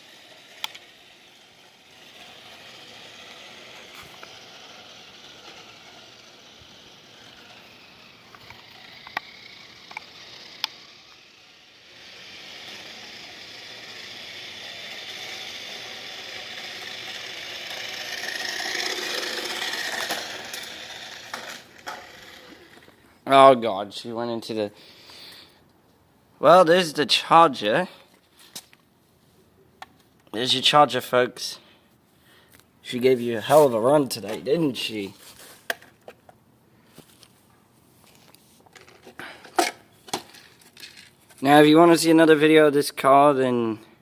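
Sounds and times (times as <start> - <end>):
toy car motor whirring: 0.0 - 23.0, 38.0 - 42.2.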